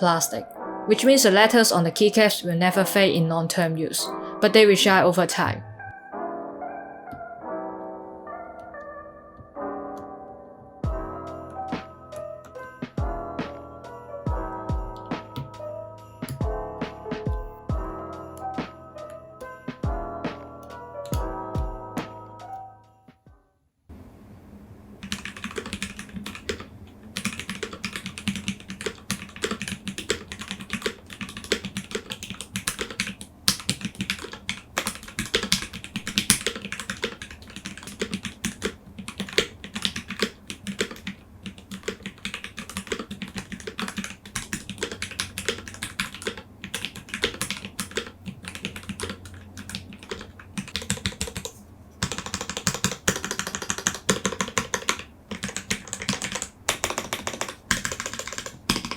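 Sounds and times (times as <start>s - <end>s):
mechanical keyboard typing: 15.0s - 15.6s, 25.0s - 58.9s.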